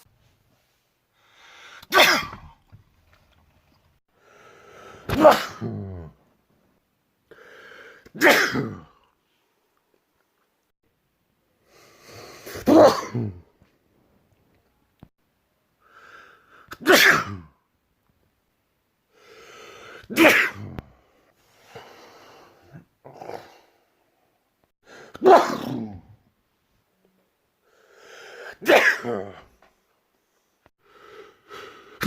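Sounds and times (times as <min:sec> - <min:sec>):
drawn-in breath: 0:00.7 - 0:01.9, 0:04.1 - 0:05.1, 0:11.6 - 0:12.6, 0:15.8 - 0:16.7, 0:19.1 - 0:20.1, 0:21.0 - 0:23.9, 0:27.6 - 0:28.6, 0:30.2 - 0:32.0
person sneezing loudly: 0:01.8 - 0:02.6, 0:05.0 - 0:06.2, 0:08.0 - 0:09.0, 0:12.4 - 0:13.5, 0:16.7 - 0:17.6, 0:19.9 - 0:20.8, 0:25.0 - 0:26.2, 0:28.4 - 0:29.5.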